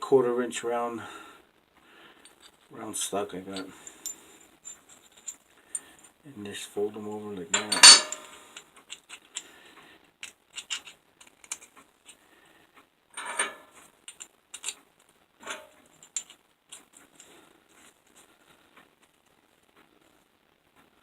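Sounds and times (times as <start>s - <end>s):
metal pieces clinking: 7.5s - 9.4s, 10.6s - 11.7s, 13.2s - 14.8s, 15.4s - 16.4s.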